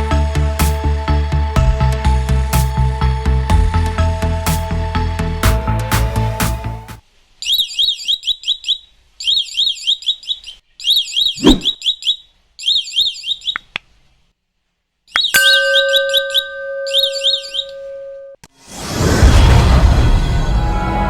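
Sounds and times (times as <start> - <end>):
sharp thump: 11.4 - 11.7
steady lower tone: 15.4 - 18.4
warbling electronic alarm siren: 15.4 - 18.4.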